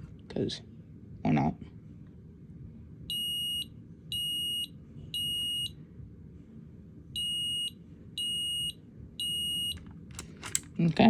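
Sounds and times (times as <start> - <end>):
smoke alarm beeping: 3.1 - 5.7, 7.2 - 9.8.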